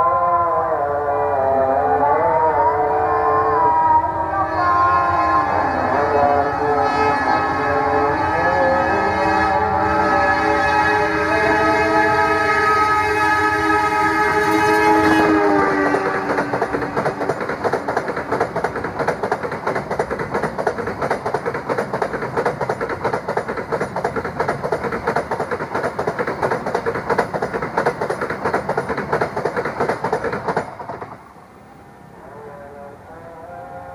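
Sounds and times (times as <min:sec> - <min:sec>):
train rushing past: 0:00.0 - 0:33.9
wheels clattering over rail joints: 0:14.2 - 0:31.4.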